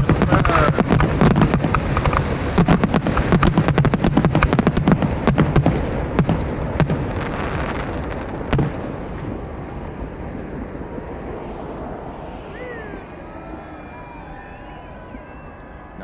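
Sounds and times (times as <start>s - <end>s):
firework bang with rumbling echo: 0.0s - 11.4s.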